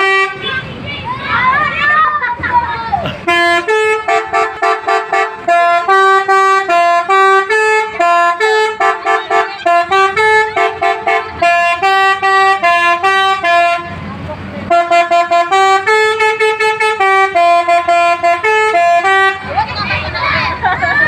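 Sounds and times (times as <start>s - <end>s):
multi-tone horn playing a tune: 0.0s - 0.4s, 3.3s - 14.0s, 14.7s - 19.5s.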